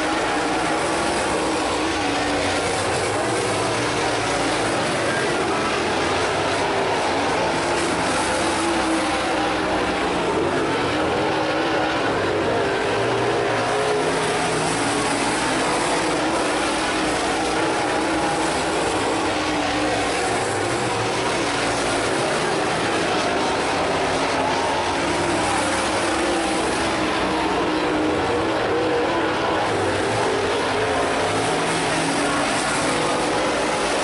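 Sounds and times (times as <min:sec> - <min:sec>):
race car engines at speed: 0:00.0 - 0:34.0.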